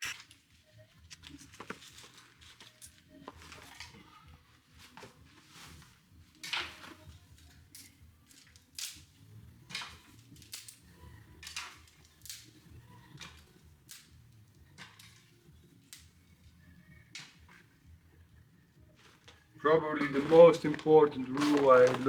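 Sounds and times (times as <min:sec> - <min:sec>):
broom sweeping a floor: 0:01.1 - 0:07.9, 0:20.0 - 0:22.0.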